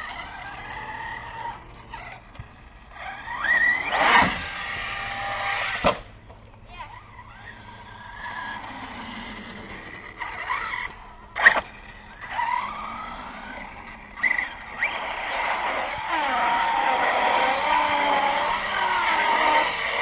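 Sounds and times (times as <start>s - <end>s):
electric motor whining: 0.0s - 20.0s
tyres scrabbling: 0.0s - 20.0s
sharp crack: 5.6s - 6.2s.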